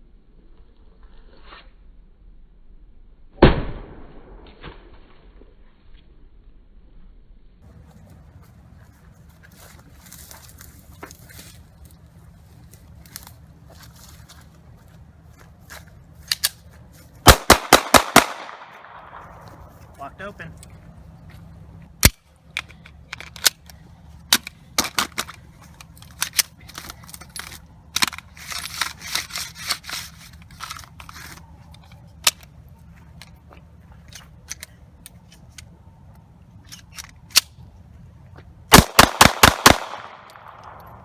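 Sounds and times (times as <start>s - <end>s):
pistol handling clicks: 16.2s - 16.6s, 17.3s - 19.6s, 22.0s - 29.9s, 38.7s - 41.0s
gunshots: 17.2s - 19.5s, 38.7s - 41.0s.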